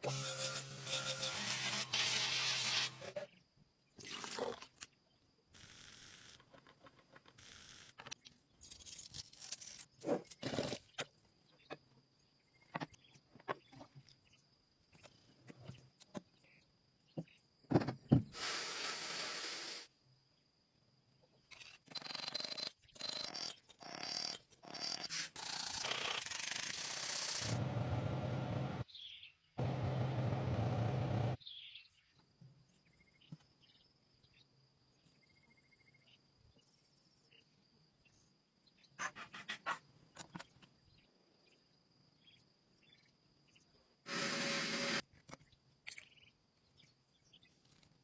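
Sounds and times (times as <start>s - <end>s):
scraping and rubbing metal: 0.1s - 3.1s.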